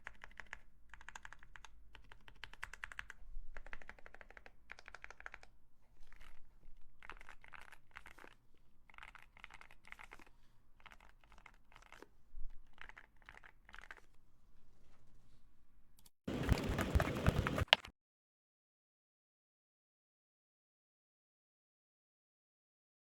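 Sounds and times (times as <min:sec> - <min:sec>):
mechanical keyboard key clicks: 0:00.0 - 0:05.5.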